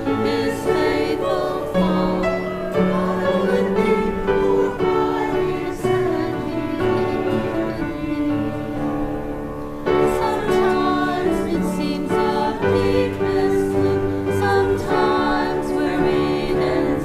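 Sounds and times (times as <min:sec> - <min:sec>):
congregation and choir singing a hymn: 0:00.0 - 0:17.0.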